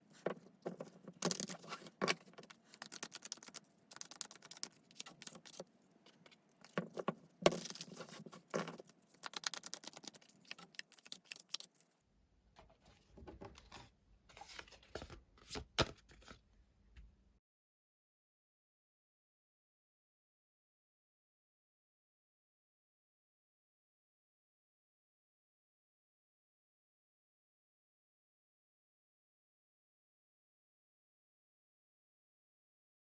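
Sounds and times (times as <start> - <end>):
cards shuffling: 0.2 - 11.8.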